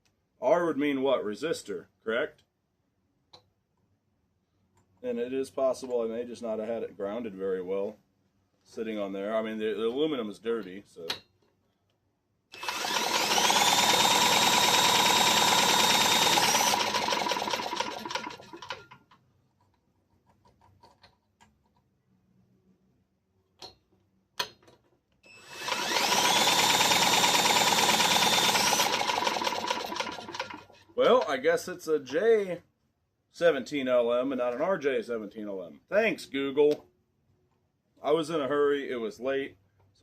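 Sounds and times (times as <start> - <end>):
power tool motor whine: 12.6 - 18.6, 25.3 - 30.6.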